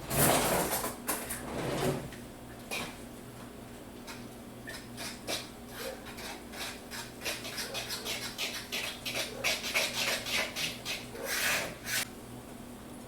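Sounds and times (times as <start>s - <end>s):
utensil scraping mixing bowl: 4.7s - 12.1s.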